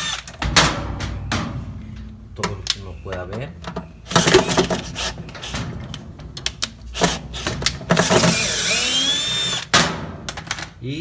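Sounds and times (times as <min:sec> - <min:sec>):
clicks and rattles of work: 0:00.0 - 0:10.8
power drill whining: 0:04.1 - 0:05.5, 0:07.0 - 0:09.7.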